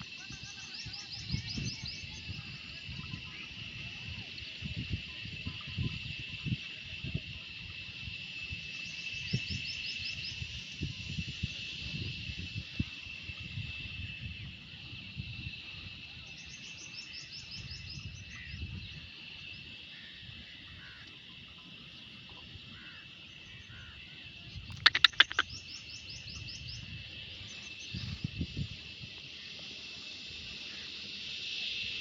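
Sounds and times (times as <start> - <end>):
high insect drone: 0.0 - 32.0
sharp loud clicks: 24.7 - 25.5
bird chirping: 24.7 - 28.0.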